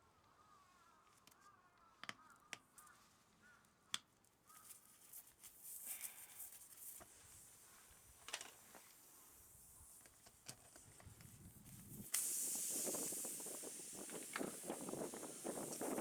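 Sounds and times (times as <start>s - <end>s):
air hissing at car tyre: 11.3s - 16.0s.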